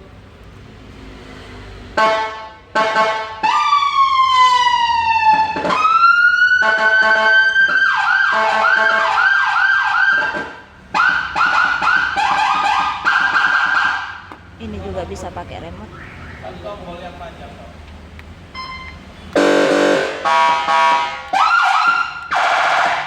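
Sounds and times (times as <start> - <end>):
police siren: 2.0 - 14.3, 15.8 - 16.6, 18.5 - 23.0.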